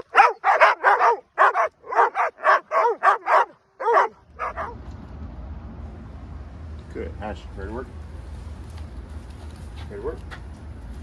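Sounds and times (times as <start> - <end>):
dog barking rapidly: 0.0 - 4.8.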